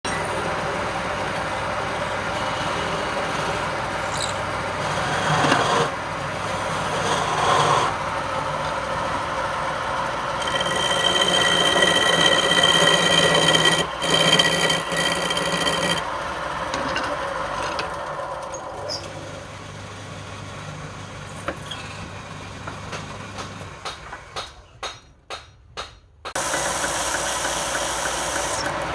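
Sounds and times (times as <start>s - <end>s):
wood lathe running: 1.0s - 19.4s, 26.4s - 28.9s
tool scraping spinning wood: 2.4s - 19.2s.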